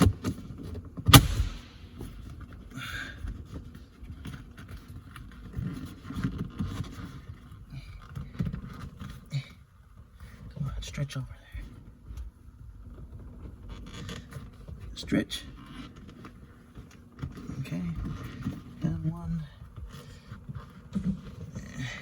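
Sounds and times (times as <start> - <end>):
rubber and plastic parts rubbing: 0.0 - 10.6, 11.7 - 22.0
sharp knock: 1.1 - 1.8.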